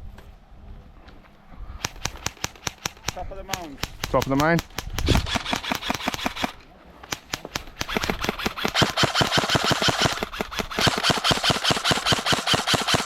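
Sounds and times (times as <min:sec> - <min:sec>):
airsoft guns firing: 0:01.8 - 0:13.0.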